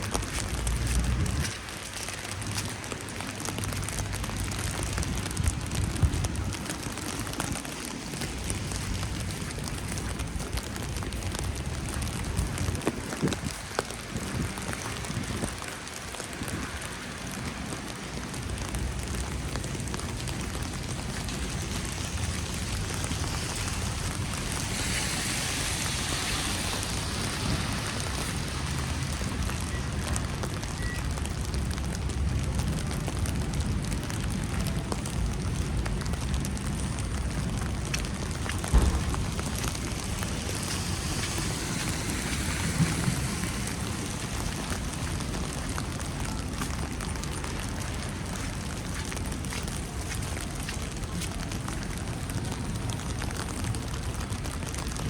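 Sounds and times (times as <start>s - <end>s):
wet snow pattering: 0.0s - 55.0s
low rumble: 38.2s - 45.4s
sharp knock: 38.7s - 39.2s.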